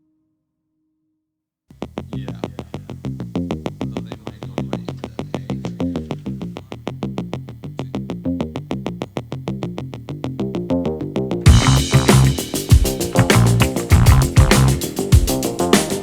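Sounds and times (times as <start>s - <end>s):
drums and bass: 1.7s - 16.0s
synthesizer plucked notes: 10.5s - 16.0s.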